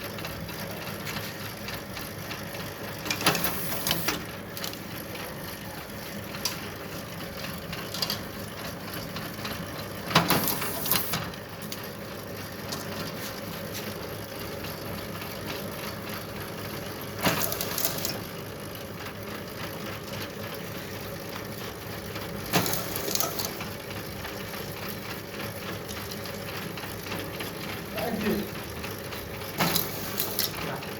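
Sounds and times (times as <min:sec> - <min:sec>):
motor-driven machine running: 0:01.8 - 0:11.4, 0:17.2 - 0:18.4, 0:22.0 - 0:26.4, 0:27.0 - 0:30.9.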